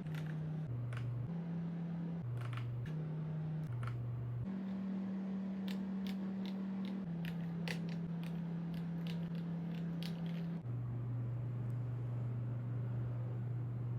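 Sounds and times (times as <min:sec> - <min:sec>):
low steady hum: 0:00.0 - 0:13.9.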